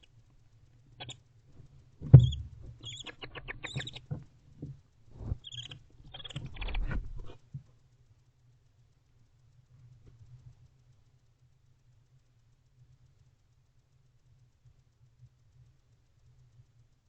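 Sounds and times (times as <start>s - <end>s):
thumps in wooden nest box: 2.0s - 2.8s
owls chittering: 2.1s - 4.2s, 5.3s - 6.9s.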